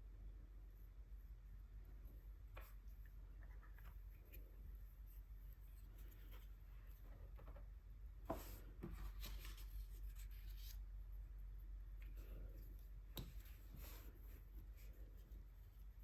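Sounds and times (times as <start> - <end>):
paintbrush strokes on paper: 8.3 - 11.5, 12.1 - 16.0.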